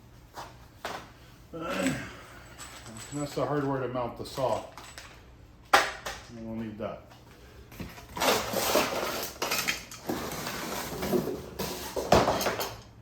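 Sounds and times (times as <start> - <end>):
small metal parts clinking: 2.2 - 5.2.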